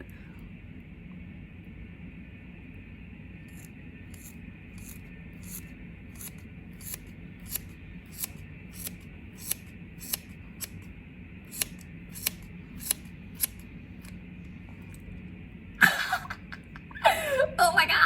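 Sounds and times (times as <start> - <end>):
faint steady hum: 0.0 - 18.0
scissors snipping hair: 3.5 - 10.8, 11.5 - 14.2.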